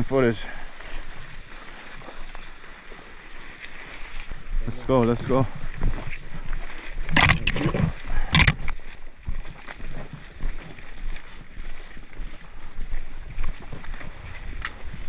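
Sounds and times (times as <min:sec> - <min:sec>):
rustling movement on camera: 0:00.8 - 0:04.5, 0:05.6 - 0:11.4.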